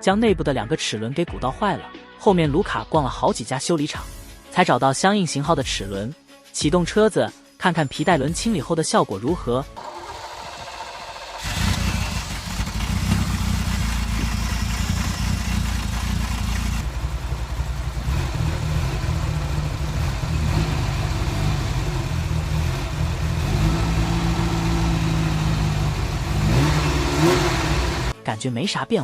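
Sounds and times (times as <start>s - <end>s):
car engine starting and running: 9.8s - 28.2s.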